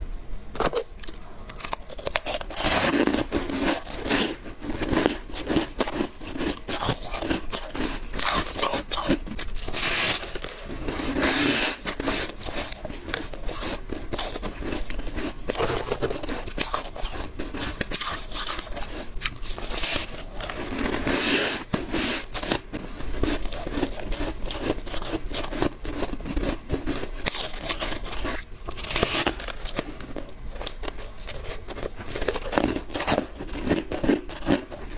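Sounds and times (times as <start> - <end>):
crunching bites of ice: 0.6 - 34.9.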